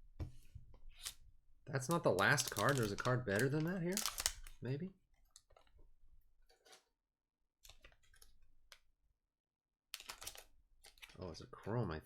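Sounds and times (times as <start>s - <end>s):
trading cards being handled: 1.9s - 4.6s, 10.0s - 11.2s.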